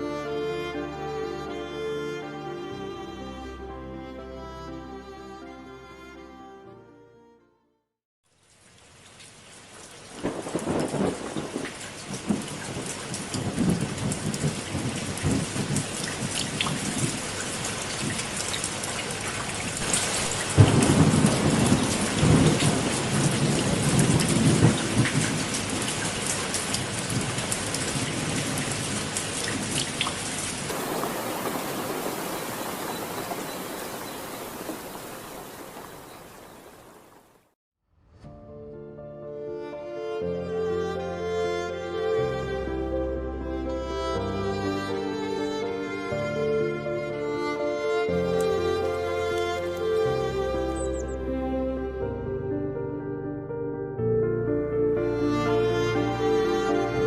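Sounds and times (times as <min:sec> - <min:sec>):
loud rumbling water noise: 0:08.6 - 0:37.4.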